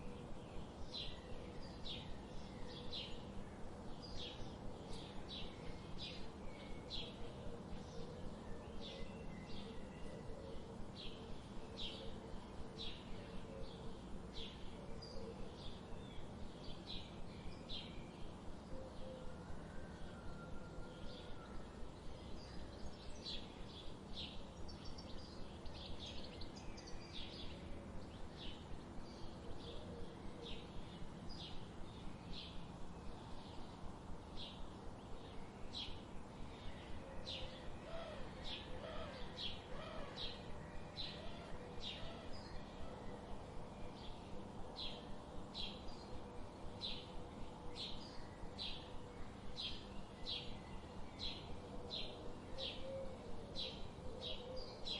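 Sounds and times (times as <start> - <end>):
songbird chirping: 0.0 - 54.9.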